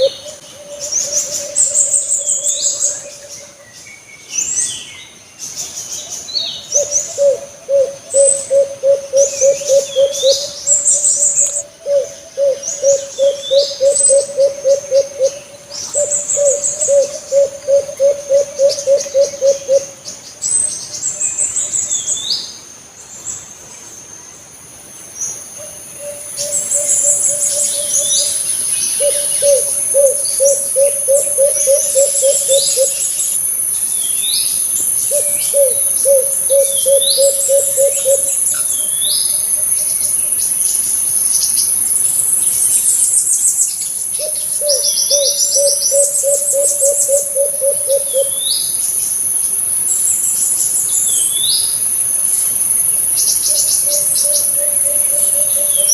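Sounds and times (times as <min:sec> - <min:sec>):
dove cooing: 0:00.0 - 0:03.4, 0:06.7 - 0:20.0, 0:25.6 - 0:33.2, 0:35.1 - 0:38.6, 0:44.2 - 0:48.5, 0:53.5 - 0:55.9
birds chirping: 0:00.0 - 0:23.5, 0:24.1 - 0:55.9
high insect whine: 0:00.0 - 0:55.9.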